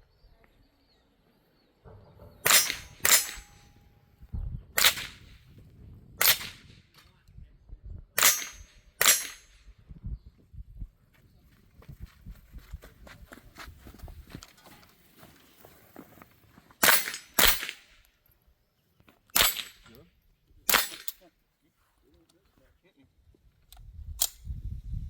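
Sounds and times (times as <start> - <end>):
rifle shots at steel targets: 1.9 - 3.9, 4.8 - 5.4, 6.2 - 6.9, 8.2 - 9.8, 16.8 - 18.0, 19.3 - 20.0, 20.7 - 21.2.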